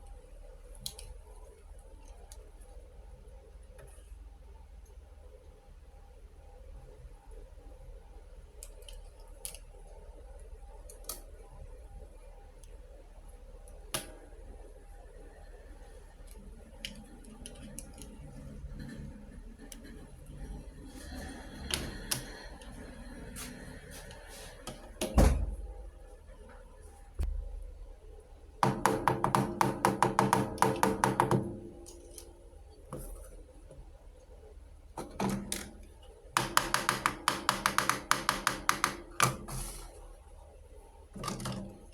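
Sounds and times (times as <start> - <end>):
faint steady hum: 0.0 - 41.9.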